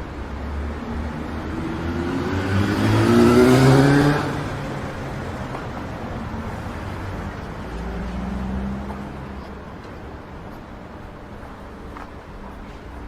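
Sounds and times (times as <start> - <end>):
steady traffic noise: 0.0 - 13.0
vehicle engine accelerating past: 1.2 - 5.0.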